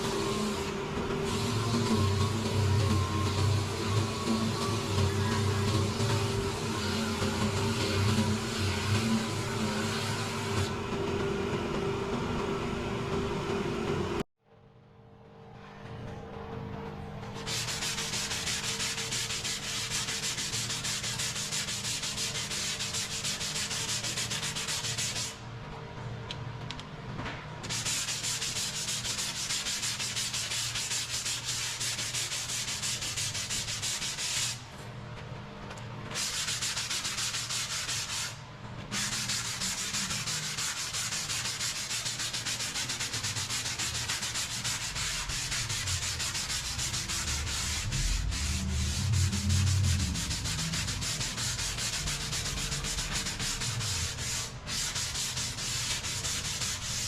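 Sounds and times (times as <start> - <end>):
sanding car body panel: 1.3 - 10.7, 17.4 - 25.4, 27.6 - 34.6, 36.2 - 57.0.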